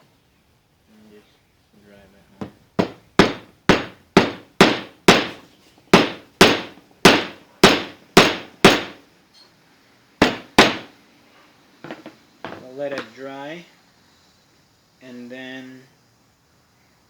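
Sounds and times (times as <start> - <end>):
hammer driving a nail: 2.4 - 5.4, 6.0 - 9.0, 10.2 - 10.9.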